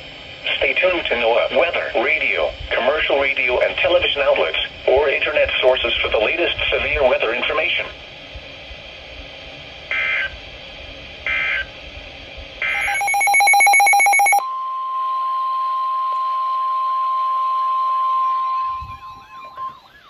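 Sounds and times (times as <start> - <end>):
steady warning alarm tone: 11.2 - 11.8, 12.6 - 20.0
digital data tones: 12.6 - 14.4
loud rapid beeping: 12.6 - 14.4.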